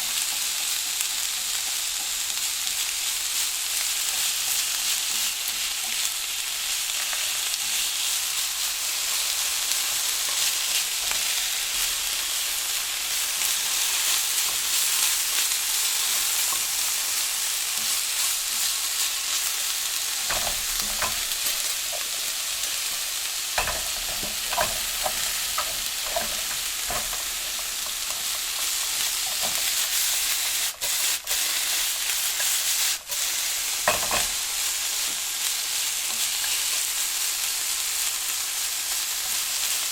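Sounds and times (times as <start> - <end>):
vegetables sizzling in a pan: 0.0 - 39.9
stirring knocks and scrapes: 23.6 - 29.8.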